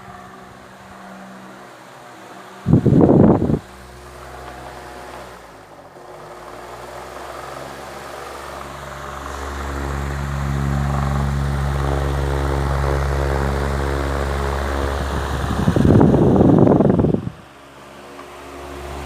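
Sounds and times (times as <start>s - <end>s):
wall fan running: 0.0s - 19.0s.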